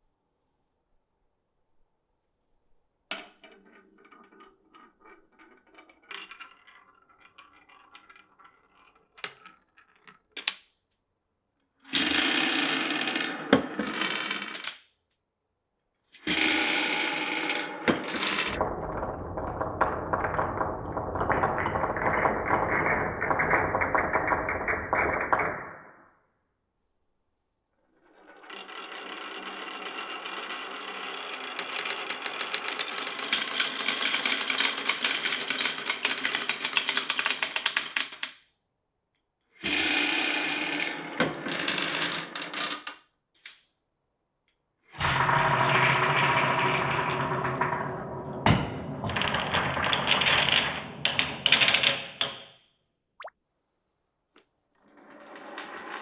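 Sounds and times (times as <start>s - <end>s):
marbles rolling on wooden tracks: 3.1s - 10.6s, 11.9s - 14.8s, 16.2s - 25.9s, 28.0s - 38.4s, 39.6s - 43.6s, 45.0s - 52.5s, 54.8s - 56.0s.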